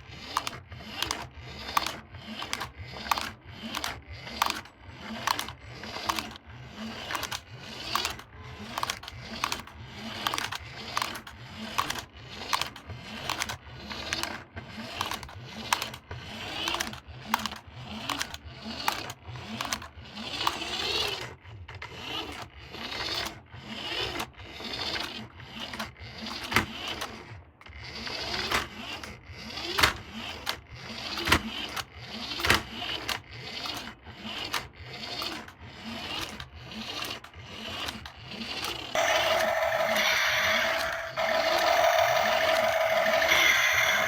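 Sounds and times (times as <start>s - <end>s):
plastic gears clicking: 0.0s - 19.9s, 32.4s - 44.0s
toy motor whirring: 0.0s - 44.0s.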